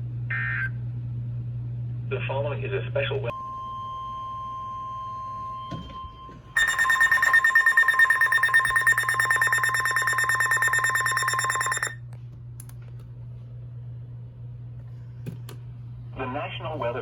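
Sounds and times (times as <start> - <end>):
pulsing electronic alert buzz: 6.6 - 12.0
steady high beep: 6.6 - 12.0.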